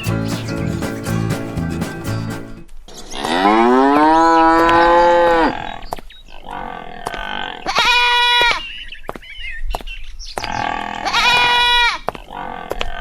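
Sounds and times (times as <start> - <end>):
cow mooing: 3.2 - 5.8
animal bleating: 6.5 - 8.7, 10.5 - 12.8.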